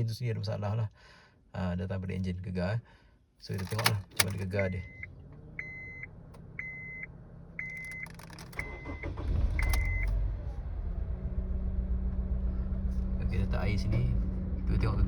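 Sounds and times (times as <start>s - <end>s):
car engine starting and misfiring idle: 3.5s - 15.0s
car warning chime beeps: 3.6s - 10.2s.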